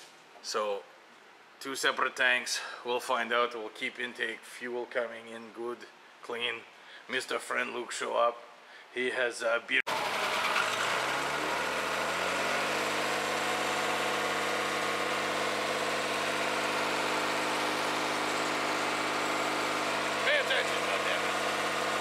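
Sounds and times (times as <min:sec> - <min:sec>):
diesel engine idling: 0:09.9 - 0:22.0.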